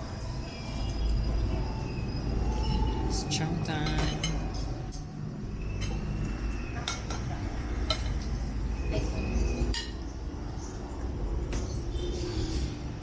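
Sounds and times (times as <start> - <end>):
cutlery clinking against plates: 3.7 - 5.1, 6.8 - 10.0.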